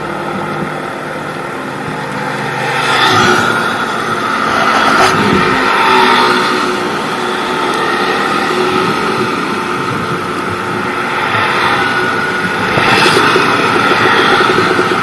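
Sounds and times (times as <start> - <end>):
wind on microphone: 3.1 - 7.1, 7.9 - 15.0.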